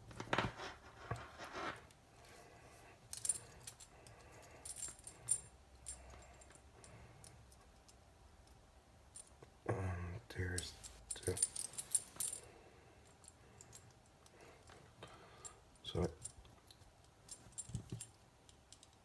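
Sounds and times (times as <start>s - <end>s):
light clicks and metallic clinks: 3.0s - 9.5s, 10.3s - 19.0s.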